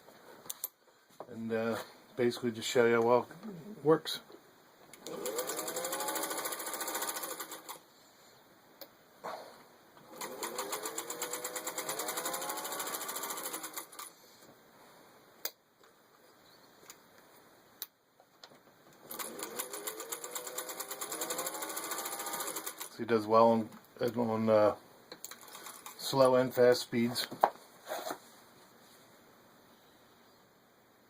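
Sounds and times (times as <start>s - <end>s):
sewing machine stitching: 5.0s - 7.8s, 10.1s - 14.1s, 19.0s - 23.0s.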